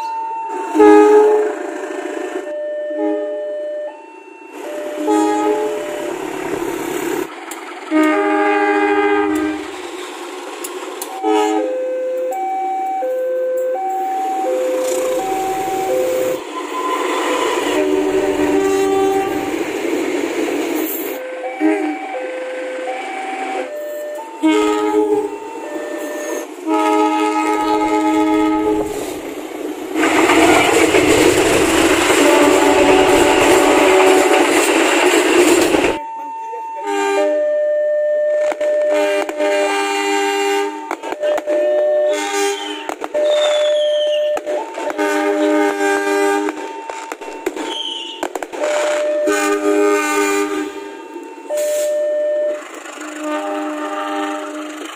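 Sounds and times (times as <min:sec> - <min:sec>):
train air horn blasts: 0:00.6 - 0:03.4, 0:04.9 - 0:06.3, 0:07.9 - 0:09.7, 0:11.2 - 0:11.8, 0:14.5 - 0:19.6, 0:20.9 - 0:22.1, 0:24.3 - 0:29.3, 0:30.0 - 0:34.6, 0:36.8 - 0:37.4, 0:38.4 - 0:46.8, 0:47.6 - 0:54.9
loud rushing noise: 0:28.4 - 0:36.0.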